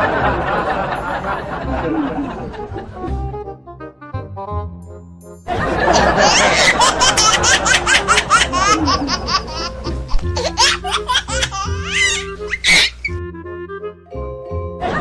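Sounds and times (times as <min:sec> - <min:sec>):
background music: 0:00.0 - 0:15.0
high-pitched giggling: 0:05.8 - 0:13.1.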